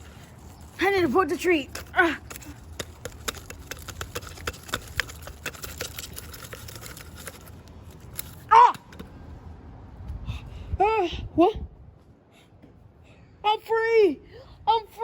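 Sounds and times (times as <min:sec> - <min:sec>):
toys clicking and tapping: 0:00.8 - 0:09.1.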